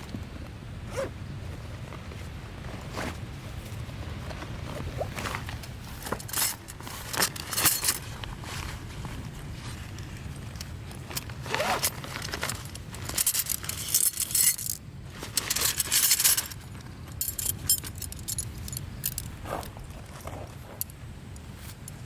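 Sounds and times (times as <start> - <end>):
gear rustling: 0.0 - 22.0
light metallic clinking: 5.0 - 22.0.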